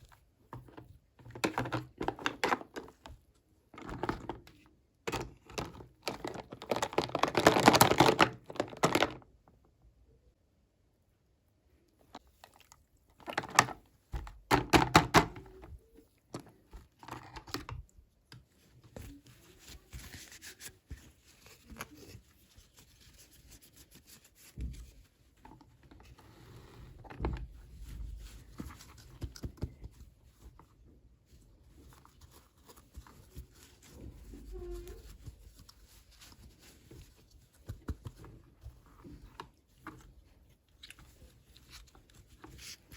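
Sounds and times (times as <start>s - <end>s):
packaging rustling: 5.6s - 9.2s.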